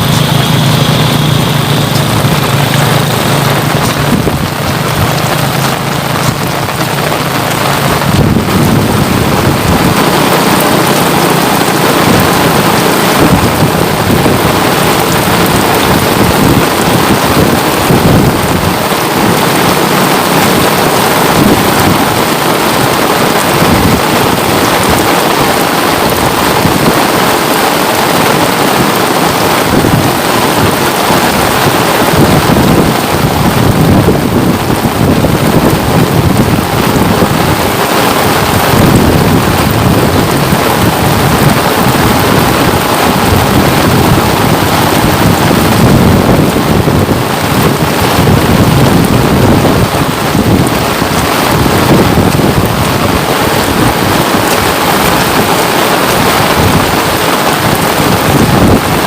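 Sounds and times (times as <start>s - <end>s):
low rumble: 0.0s - 13.8s
loud rain falling: 0.0s - 59.0s.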